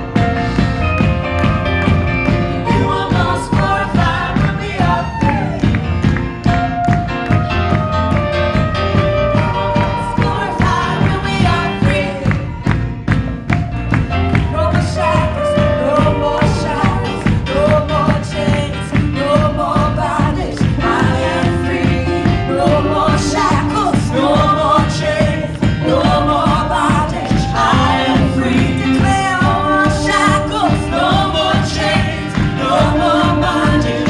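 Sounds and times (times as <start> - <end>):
drumbeat: 0.0 - 34.0
live worship band: 0.0 - 34.0
people singing: 2.2 - 5.8, 9.4 - 12.6, 14.4 - 34.0.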